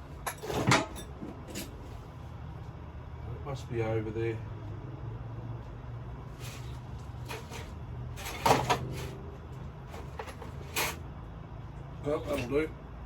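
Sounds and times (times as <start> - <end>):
tools clattering: 0.2 - 1.8, 6.4 - 9.2, 9.9 - 11.0.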